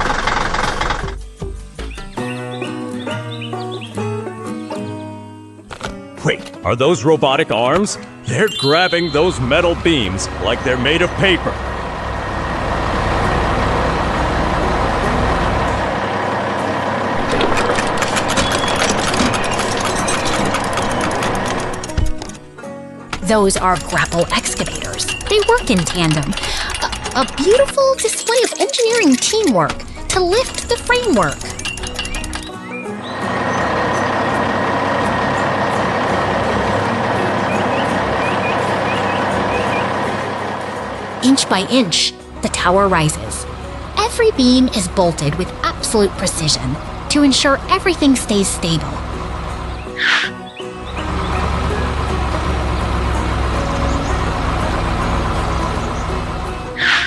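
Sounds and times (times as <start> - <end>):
rapid clicks and knocks: 0.0 - 1.2, 17.2 - 22.5, 23.1 - 32.6
heavy machine engine running: 0.0 - 1.3, 8.7 - 56.8.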